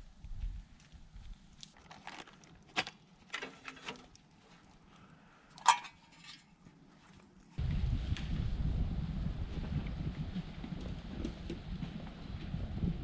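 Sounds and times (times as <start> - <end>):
steady low rush: 7.6 - 13.0.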